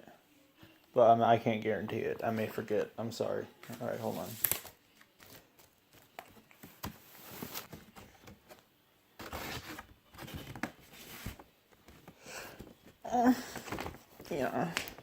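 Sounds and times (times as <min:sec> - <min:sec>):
cardboard and paper rustling: 0:03.6 - 0:15.0.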